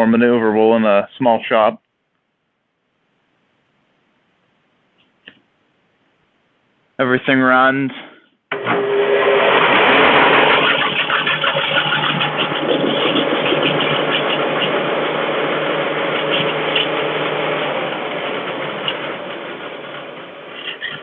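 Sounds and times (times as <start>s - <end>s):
machine motor humming: 8.5s - 21.0s
machine rattling: 9.4s - 21.0s.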